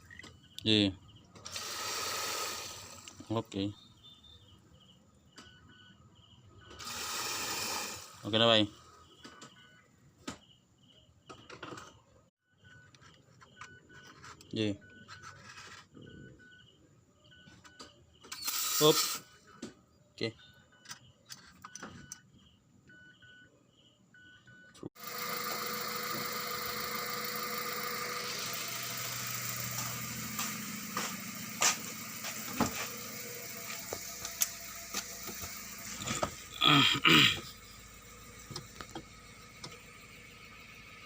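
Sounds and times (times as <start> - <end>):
short electronic beeps: 3.6 - 4.6, 13.5 - 19.3, 20.2 - 22.3
car engine cranking: 25.0 - 41.0.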